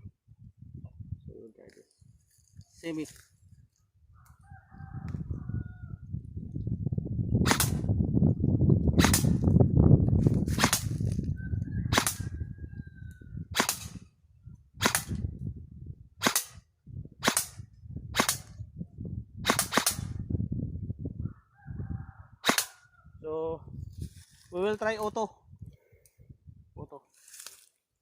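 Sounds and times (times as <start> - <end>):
airsoft rifle single shots: 7.4 - 7.9, 9.0 - 9.4, 10.5 - 10.9, 11.9 - 12.2, 13.5 - 14.0, 14.8 - 15.2, 16.2 - 16.6, 17.2 - 17.6, 18.2 - 18.6, 19.4 - 20.2, 22.4 - 22.7.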